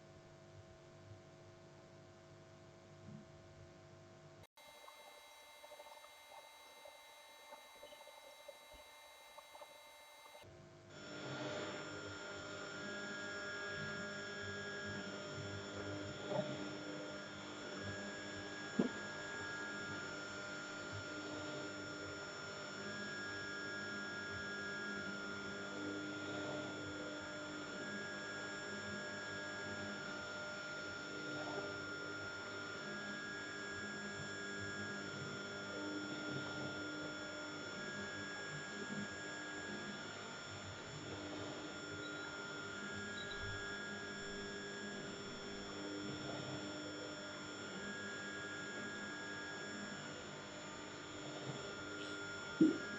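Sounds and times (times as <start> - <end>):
machine electrical whine and hum: 0.0 - 52.9
alternating high and low tones: 4.6 - 10.4
faint clicks: 4.7 - 10.4.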